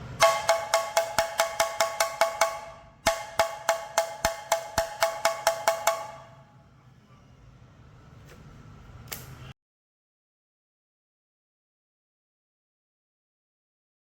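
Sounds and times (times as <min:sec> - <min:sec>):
drum strokes ringing: 0:00.0 - 0:06.5.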